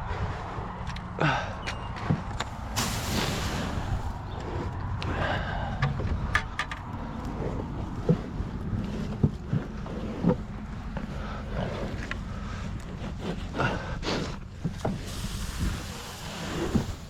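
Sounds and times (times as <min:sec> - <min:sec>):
steady low rumble: 0:00.0 - 0:17.0
cattle snorting: 0:02.8 - 0:06.2, 0:06.8 - 0:17.0.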